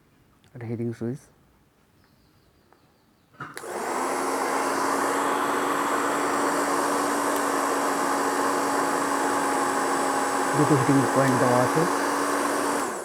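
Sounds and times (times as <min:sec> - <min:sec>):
hair dryer running: 0:03.6 - 0:13.0.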